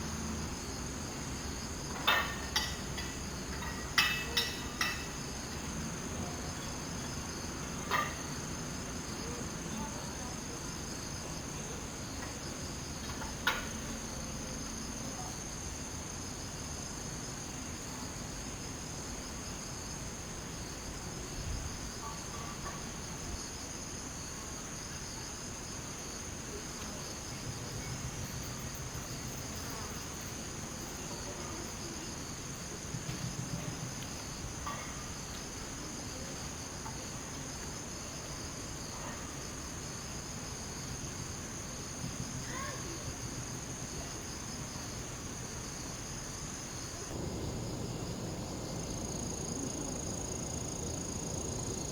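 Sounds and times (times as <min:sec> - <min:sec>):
cicadas singing: 0:00.0 - 0:51.9
low pulsing buzz: 0:47.1 - 0:51.9.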